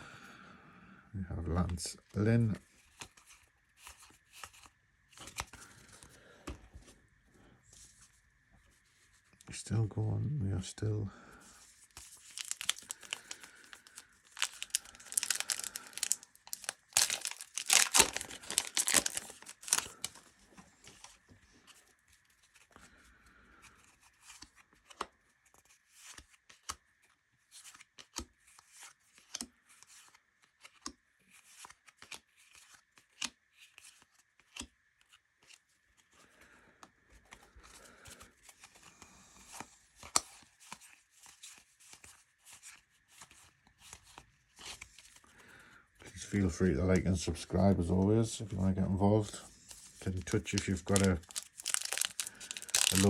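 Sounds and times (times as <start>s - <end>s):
cardboard cards being flicked through: 12.0s - 20.2s
foil wrapper tearing and crinkling: 12.0s - 20.2s, 50.0s - 53.0s.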